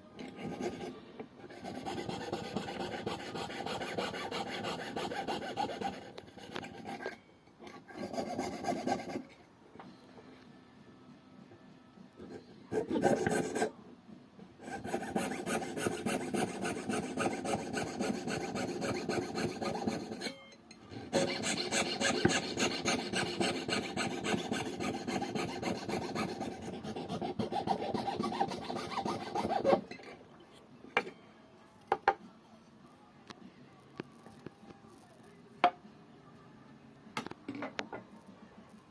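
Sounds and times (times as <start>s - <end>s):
hand tool rasping across wood: 1.5s - 7.2s, 12.8s - 13.7s, 14.6s - 20.3s, 21.0s - 29.8s.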